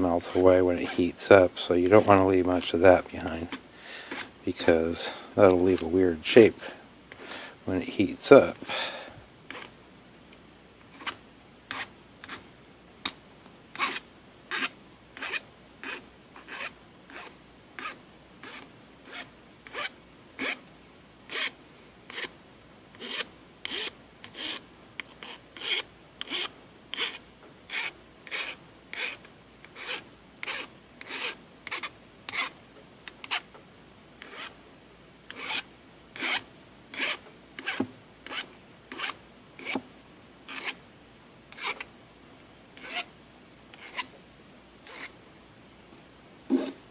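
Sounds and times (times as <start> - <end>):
file rasping metal tip: 9.5 - 9.7, 13.8 - 20.6, 21.3 - 21.5, 23.0 - 32.5, 34.2 - 34.5, 35.3 - 39.8, 40.5 - 40.8, 41.5 - 41.9, 42.8 - 43.1, 43.7 - 44.1, 44.8 - 45.1, 46.5 - 46.8.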